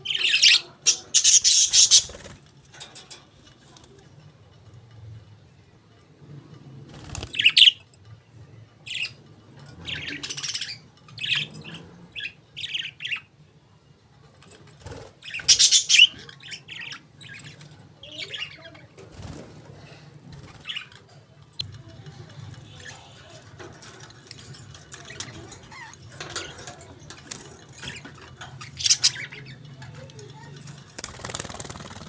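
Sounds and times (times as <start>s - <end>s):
budgerigars chirping and warbling: 0.0s - 2.4s, 8.9s - 9.2s, 9.8s - 13.3s, 15.0s - 19.4s, 22.6s - 32.0s.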